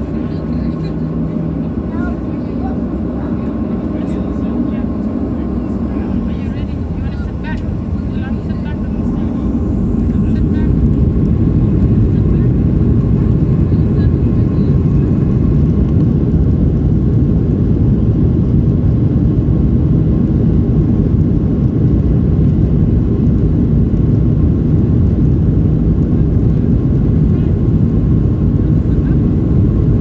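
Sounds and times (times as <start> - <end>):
faint steady whine: 0.0 - 16.3
aircraft cabin engine rumble: 0.0 - 30.0.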